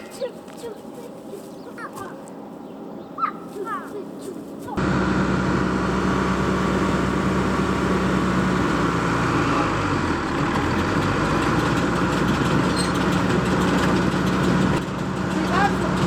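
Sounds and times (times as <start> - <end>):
tractor engine running: 4.8 - 16.0.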